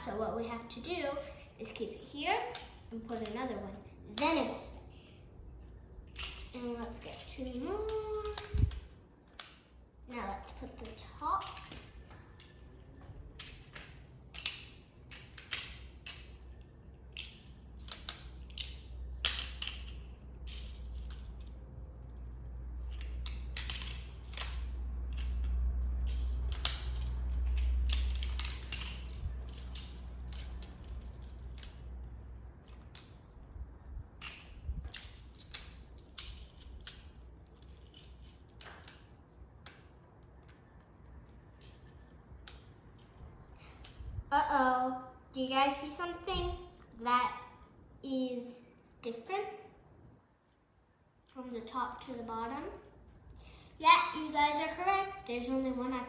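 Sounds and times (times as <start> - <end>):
plastic tiles clicking together: 22.9 - 32.0.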